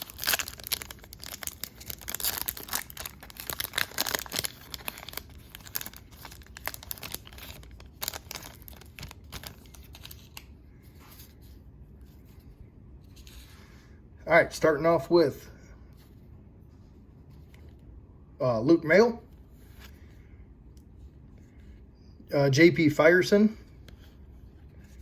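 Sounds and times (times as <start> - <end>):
foil wrapper tearing and crinkling: 0.0 - 10.4.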